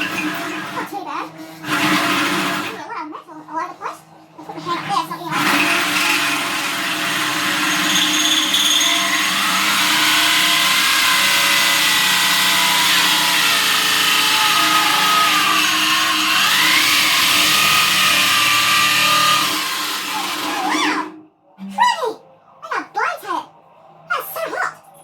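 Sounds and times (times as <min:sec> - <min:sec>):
electric drill boring: 0:00.0 - 0:02.8, 0:05.3 - 0:21.2.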